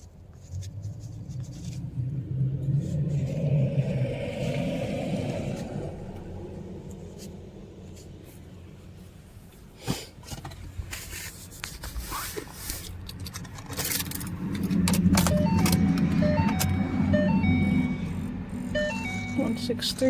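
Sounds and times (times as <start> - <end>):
car door and keys rattling: 12.8 - 16.8
dashboard chime tones: 15.3 - 18.1, 18.8 - 19.8.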